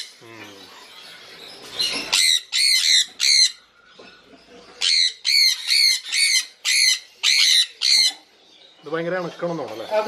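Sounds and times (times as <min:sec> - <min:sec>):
parrot screeching: 0:01.8 - 0:03.6, 0:04.8 - 0:08.2.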